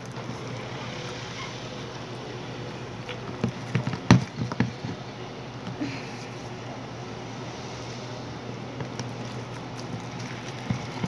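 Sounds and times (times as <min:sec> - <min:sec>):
slime being stirred: 0:00.0 - 0:05.2, 0:08.6 - 0:11.0.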